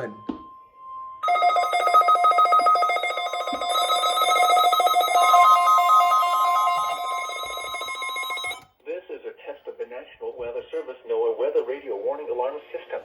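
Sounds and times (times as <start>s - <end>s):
steady electronic tone: 0.0s - 8.6s
warbling electronic siren: 0.0s - 8.6s.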